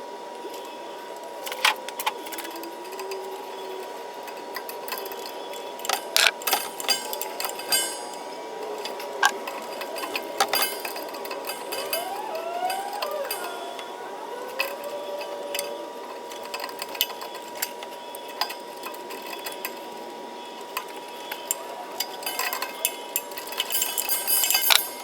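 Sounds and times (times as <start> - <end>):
thin high hum: 5.6 - 17.3
wire clicking in metal box: 5.8 - 15.8
hand tools tapping metal: 5.8 - 15.9, 21.3 - 25.0.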